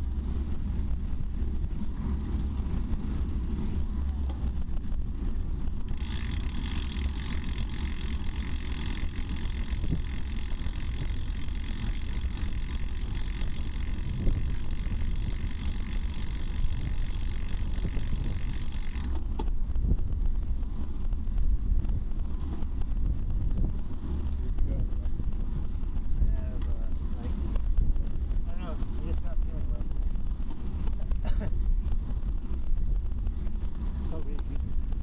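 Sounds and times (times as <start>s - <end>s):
wind rumbling on microphone: 0.0s - 35.0s
bicycle freewheel ratcheting buzz: 4.6s - 26.3s.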